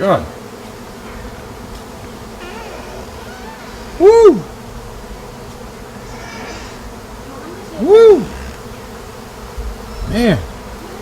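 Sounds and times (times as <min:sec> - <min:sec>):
bees buzzing: 0:00.0 - 0:11.0.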